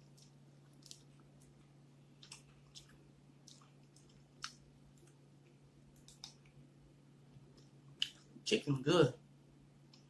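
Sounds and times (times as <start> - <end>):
person chewing with mouth clicks: 0.0 - 6.6, 7.5 - 8.3.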